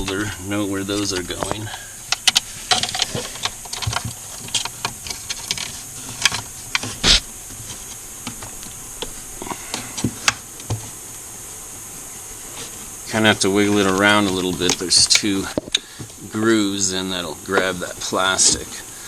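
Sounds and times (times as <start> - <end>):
faint steady hiss: 0.0 - 19.0
plastic parts clicking and tapping: 1.2 - 7.0.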